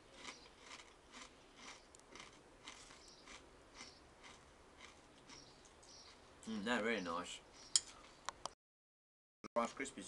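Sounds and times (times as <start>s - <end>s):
chewing crunchy cereal: 0.0s - 6.3s.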